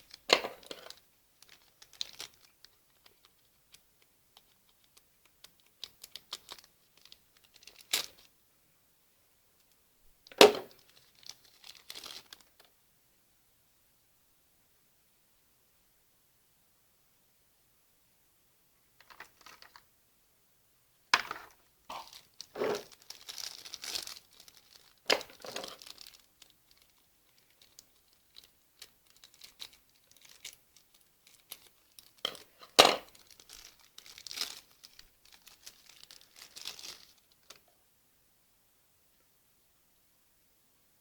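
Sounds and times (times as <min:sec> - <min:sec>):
packaging crinkling: 0:00.0 - 0:03.8, 0:04.4 - 0:08.3, 0:10.3 - 0:12.6, 0:19.0 - 0:19.8, 0:21.2 - 0:37.6.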